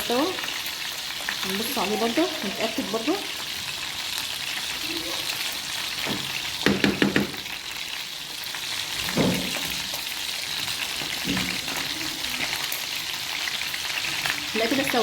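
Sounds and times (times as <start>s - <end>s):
frying sizzle: 0.0s - 15.0s.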